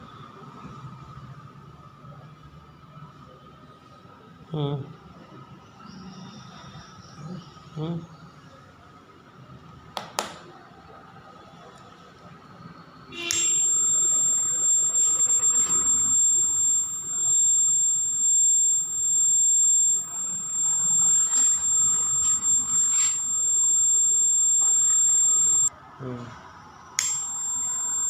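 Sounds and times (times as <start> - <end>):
electronic buzzer high-pitched tone: 13.2 - 25.7, 27.0 - 28.0.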